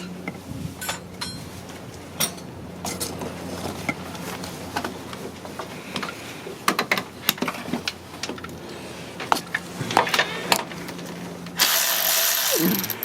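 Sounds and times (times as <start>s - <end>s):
steady low hum: 0.0s - 13.0s
hand tools clicking on bolts: 11.5s - 13.0s.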